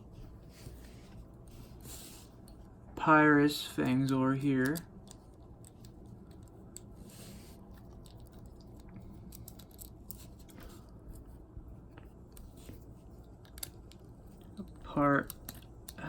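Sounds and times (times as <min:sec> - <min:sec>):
steady low hum: 0:00.0 - 0:16.0
plastic toy clicking and rattling: 0:03.9 - 0:06.9, 0:07.9 - 0:10.3.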